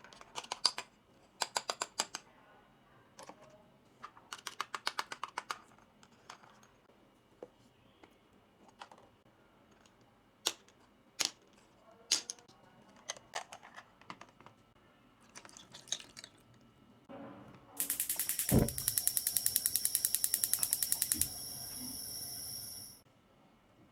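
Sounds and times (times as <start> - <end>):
plastic toy pieces clicking: 0.1 - 2.2, 4.2 - 6.6.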